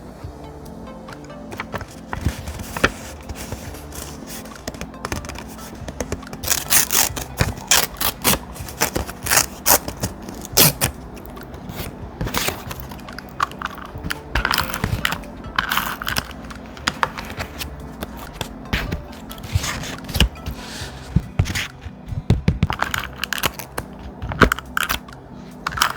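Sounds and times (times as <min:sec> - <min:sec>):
thick paper rustling and crinkling: 0:01.5 - 0:25.9.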